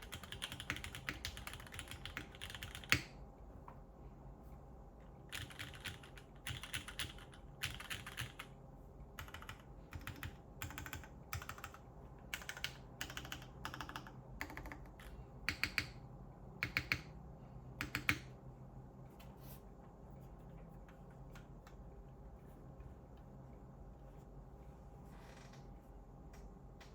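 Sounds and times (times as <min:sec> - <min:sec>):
mechanical keyboard typing: 0:00.0 - 0:03.2, 0:05.3 - 0:08.6, 0:09.2 - 0:16.0, 0:16.6 - 0:17.2, 0:17.8 - 0:18.4.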